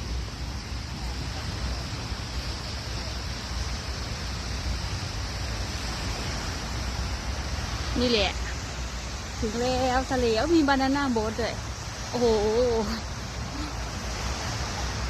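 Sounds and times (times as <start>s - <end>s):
sea waves rushing: 0.0s - 15.0s.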